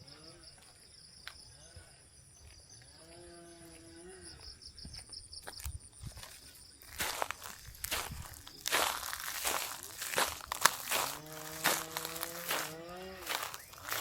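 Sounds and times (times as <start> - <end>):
insects chorus pulsing: 0.0 - 14.0
footsteps: 4.8 - 14.0.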